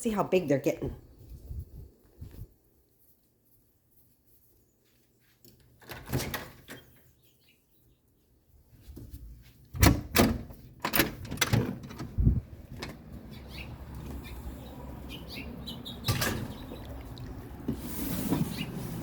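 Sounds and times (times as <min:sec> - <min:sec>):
door clicks: 0:09.8 - 0:14.2.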